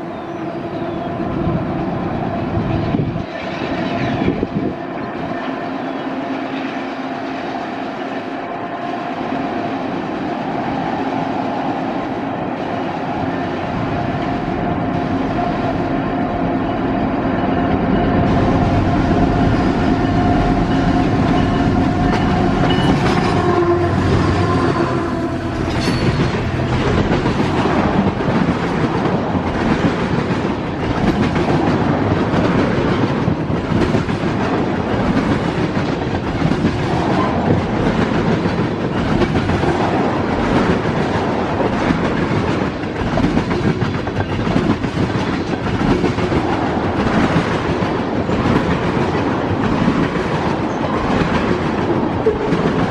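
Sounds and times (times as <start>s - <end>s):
train rumbling past: 0.0s - 52.9s
train horn chord: 18.2s - 27.2s.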